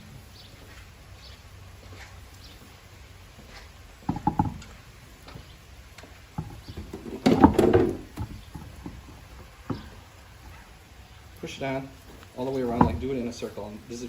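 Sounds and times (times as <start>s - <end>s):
parts knocking and rattling: 3.4s - 13.7s.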